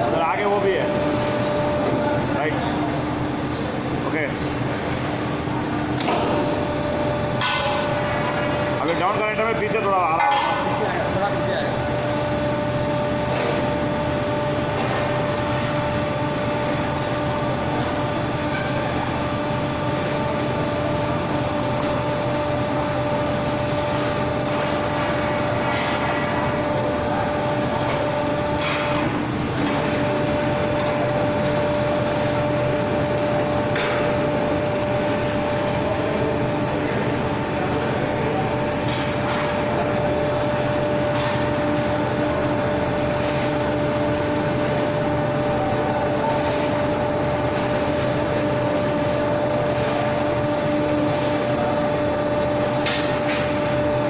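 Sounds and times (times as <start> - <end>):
mid-pitched whine: 0.0 - 54.0.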